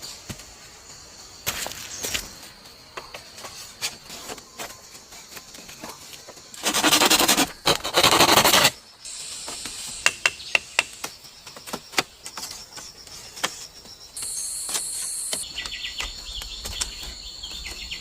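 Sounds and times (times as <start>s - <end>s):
high insect hum: 0.0s - 18.0s
loud rough scraping: 6.6s - 8.8s.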